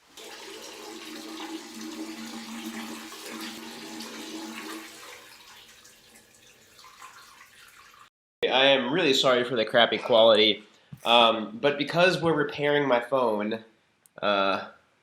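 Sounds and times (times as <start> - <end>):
water rushing through pipes: 0.0 - 8.1.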